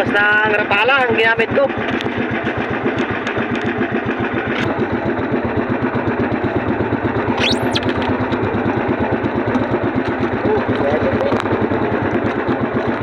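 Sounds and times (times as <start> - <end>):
small boat engine running: 0.0 - 13.0
high rising squeal: 7.4 - 7.9.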